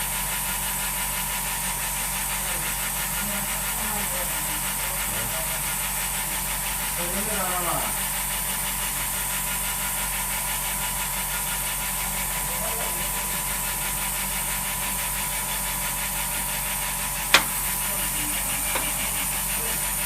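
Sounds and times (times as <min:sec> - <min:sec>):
sharp click: 0:17.4 - 0:17.8.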